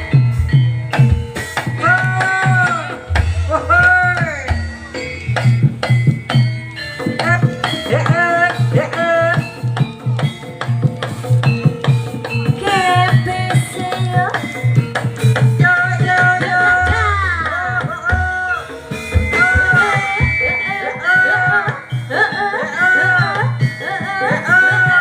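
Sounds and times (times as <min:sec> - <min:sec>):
high sliding melody: 0:00.0 - 0:14.5
hand drums beating: 0:00.0 - 0:25.0.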